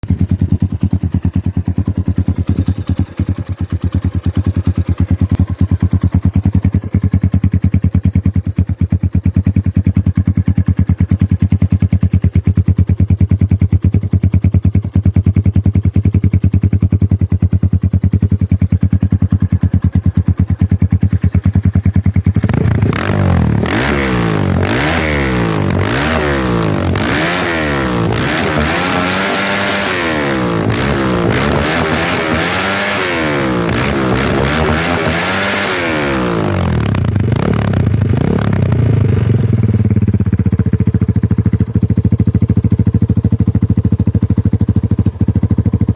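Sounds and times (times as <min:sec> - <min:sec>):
dirt bike engine idling and revving: 0:00.0 - 0:45.9.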